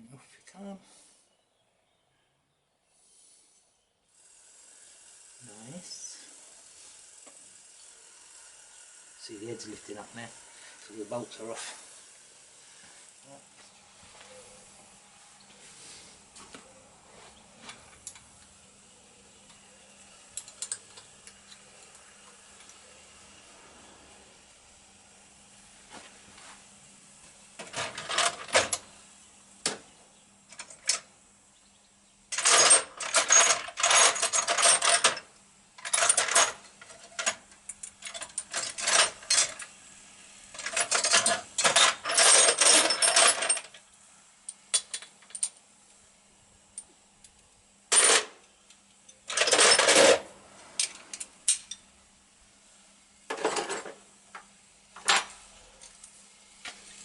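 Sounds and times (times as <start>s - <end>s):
metal parts and tools clinking: 20.4s - 21.9s, 27.6s - 28.8s, 30.5s - 31.1s, 32.3s - 39.7s, 40.5s - 43.8s, 44.5s - 45.6s, 47.9s - 48.5s, 49.1s - 51.8s, 53.3s - 54.0s.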